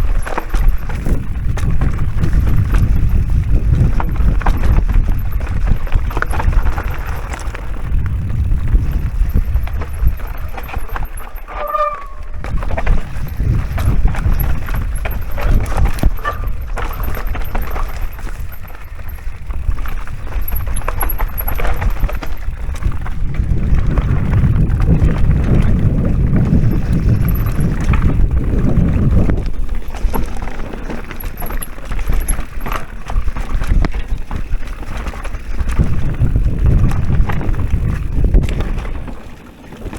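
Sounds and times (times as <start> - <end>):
bike rattling over rough ground: 0.0 - 39.9
wind buffeting microphone: 0.0 - 39.9
brief squeak: 9.9 - 18.7.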